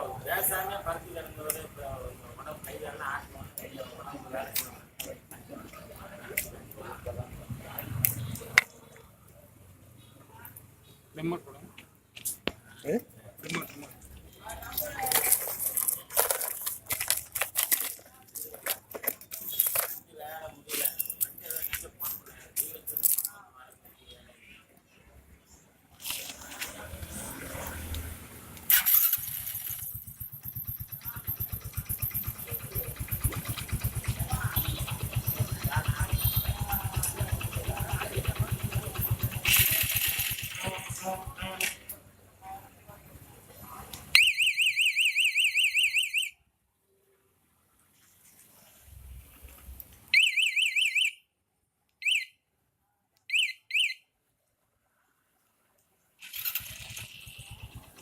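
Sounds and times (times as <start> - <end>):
motorcycle engine starting and idling: 26.0 - 41.9, 56.2 - 58.0
alarm chirps: 52.0 - 52.3, 53.3 - 54.0.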